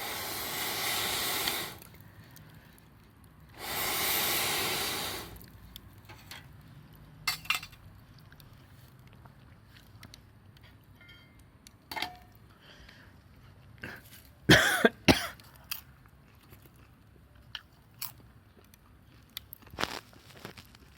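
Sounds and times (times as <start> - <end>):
small clicks and crunches: 7.7 - 10.8, 15.4 - 20.9
person coughing: 13.9 - 15.4.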